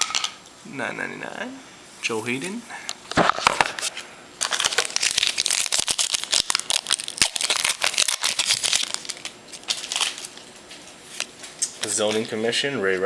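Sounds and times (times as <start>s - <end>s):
cards being handled: 3.1s - 6.6s
foil pack crinkling: 3.2s - 12.3s.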